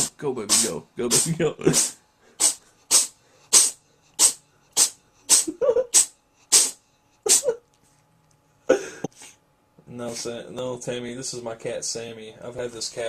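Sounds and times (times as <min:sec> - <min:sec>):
cat sneezing: 0:00.0 - 0:07.6.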